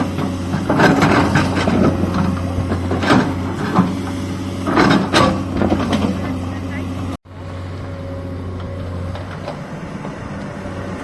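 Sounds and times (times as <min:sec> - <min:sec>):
bucket scraping rock and soil: 0:00.0 - 0:06.6
excavator diesel engine running: 0:00.0 - 0:11.0.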